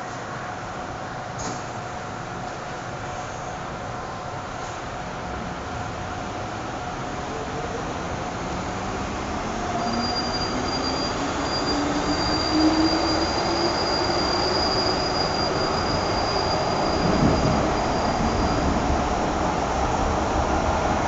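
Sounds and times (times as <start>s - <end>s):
high wheel squeal: 9.6s - 18.8s.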